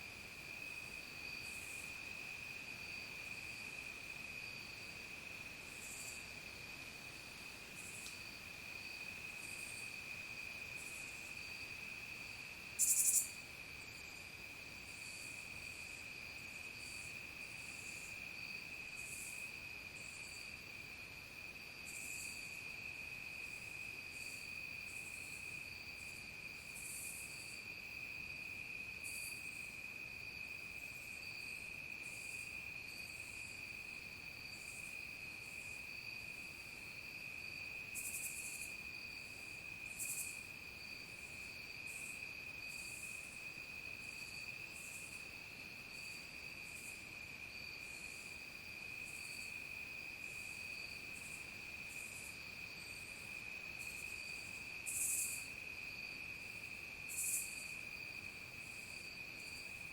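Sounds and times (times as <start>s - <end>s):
crickets trilling: 0.0s - 59.9s
insects buzzing calls: 12.8s - 13.4s.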